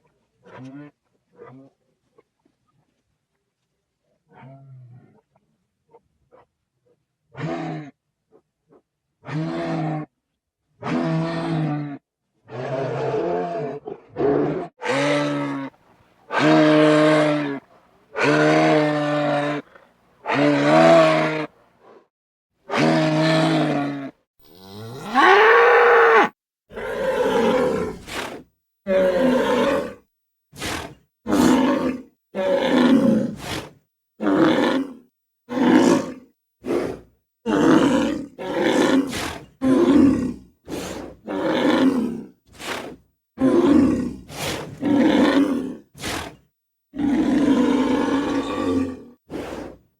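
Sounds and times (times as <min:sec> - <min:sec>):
large animal bellows: 0:22.7 - 0:27.9.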